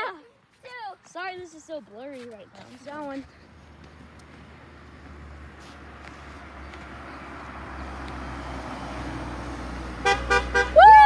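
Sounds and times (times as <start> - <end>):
car tyre and road noise: 0.5 - 11.0
car horn beeps: 10.0 - 10.8.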